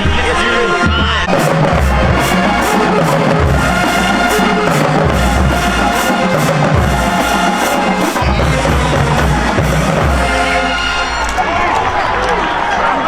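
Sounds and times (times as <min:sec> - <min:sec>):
background music with bass: 0:00.0 - 0:11.4
steady drum beat: 0:00.8 - 0:11.2.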